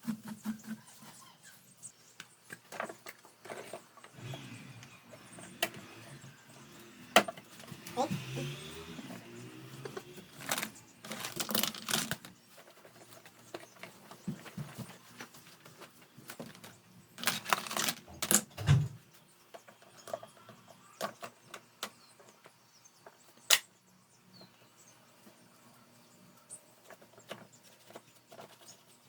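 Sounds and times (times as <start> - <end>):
clicks and knocks of handling: 9.8 - 23.7.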